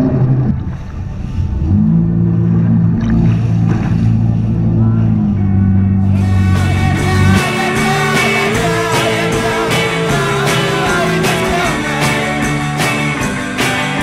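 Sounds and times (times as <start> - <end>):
rock guitar: 2.4 - 14.0
drum beat: 6.2 - 14.0.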